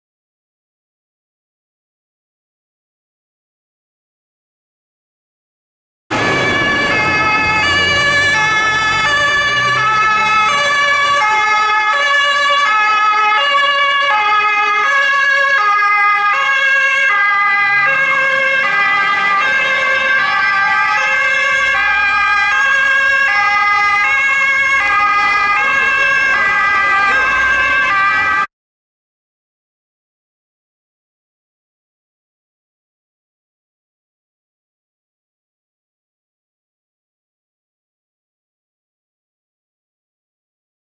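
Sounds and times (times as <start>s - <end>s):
faint vehicle noise: 6.1s - 13.4s, 15.3s - 28.5s
two-tone police siren: 6.1s - 28.5s.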